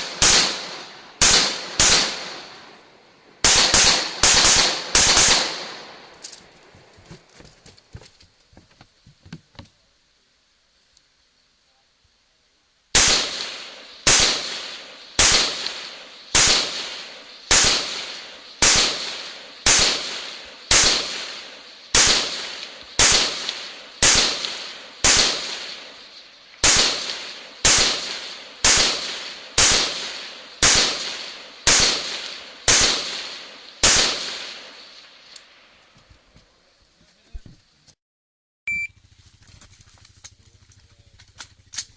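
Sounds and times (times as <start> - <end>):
rifle shots with echo: 0.0 - 6.1, 13.0 - 35.7.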